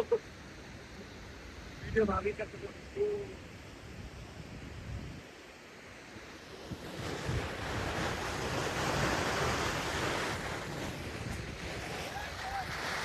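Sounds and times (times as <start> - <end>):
wind rumble on microphone: 1.7 - 5.4, 6.3 - 13.0
waterfall rushing: 12.0 - 13.0.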